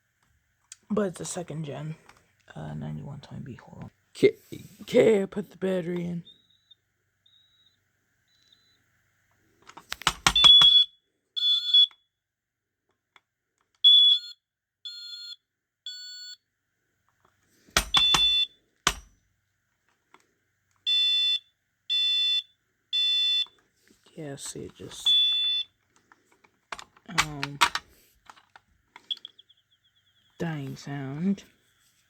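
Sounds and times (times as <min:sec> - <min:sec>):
smoke alarm beeping: 0:06.3 - 0:08.8, 0:10.1 - 0:12.1, 0:13.8 - 0:16.4, 0:17.8 - 0:19.1, 0:20.9 - 0:23.6, 0:24.8 - 0:25.8, 0:29.0 - 0:30.4
handling noise: 0:09.6 - 0:10.8, 0:17.7 - 0:19.2, 0:24.4 - 0:29.3
test button clicks: 0:27.1 - 0:27.8.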